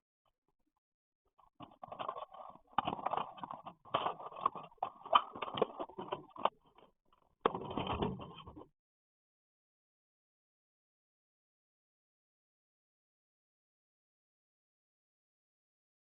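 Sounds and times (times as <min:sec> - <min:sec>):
irregular knocks clicks and scraping: 0:01.4 - 0:08.7.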